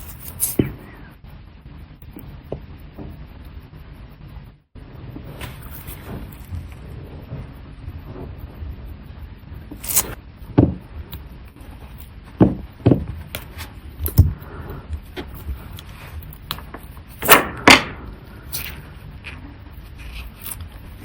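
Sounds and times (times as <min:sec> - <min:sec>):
hard objects knocking on hard surface: 0:12.4 - 0:13.1.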